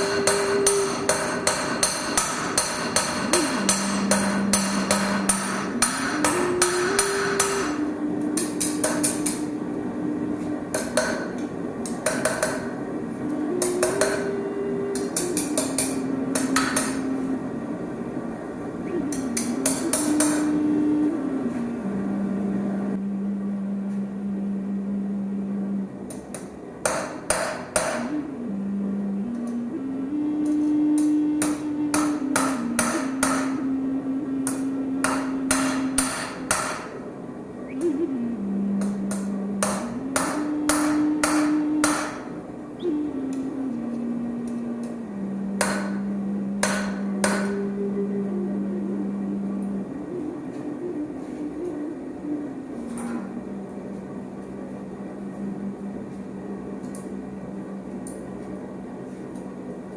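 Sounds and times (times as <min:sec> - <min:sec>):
hammer striking steel: 0:00.0 - 0:07.8, 0:08.4 - 0:09.5, 0:10.7 - 0:12.8, 0:13.6 - 0:14.4, 0:15.0 - 0:17.1, 0:19.1 - 0:20.5, 0:26.3 - 0:28.2, 0:31.0 - 0:33.6, 0:34.4 - 0:37.0, 0:38.8 - 0:42.3, 0:45.6 - 0:46.0, 0:46.6 - 0:47.6.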